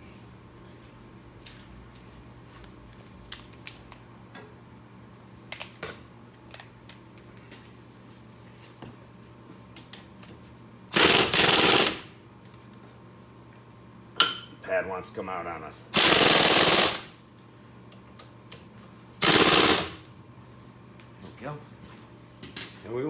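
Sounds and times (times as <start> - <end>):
impact wrench hammering: 11.0 - 12.1, 16.0 - 17.1, 19.2 - 20.0.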